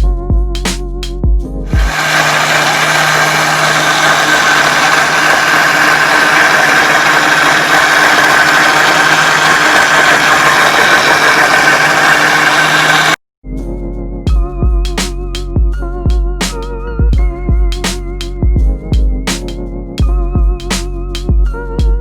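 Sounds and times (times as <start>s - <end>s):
blender motor whirring: 1.7s - 13.2s.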